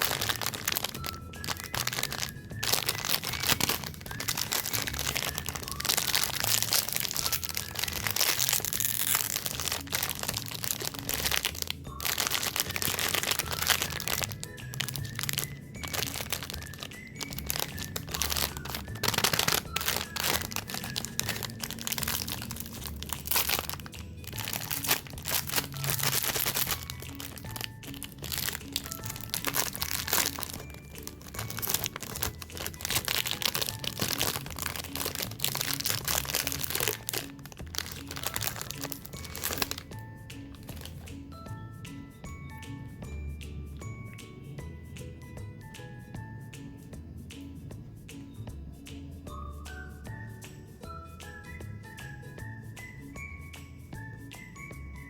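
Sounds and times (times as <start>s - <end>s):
plastic wrappers crinkling: 0.0s - 41.1s
background music: 0.0s - 55.0s.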